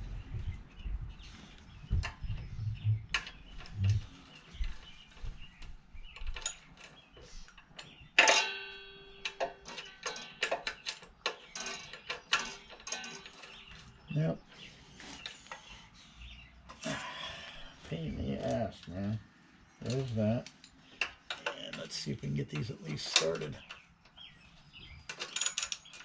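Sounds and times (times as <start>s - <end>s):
metal tools clinking: 6.2s - 14.6s, 19.8s - 24.2s, 24.8s - 26.0s.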